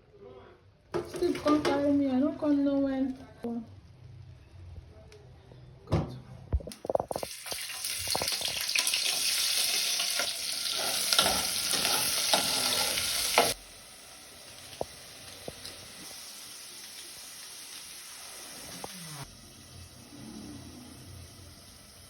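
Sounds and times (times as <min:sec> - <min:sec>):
food sizzling in hot oil: 0:07.0 - 0:22.0.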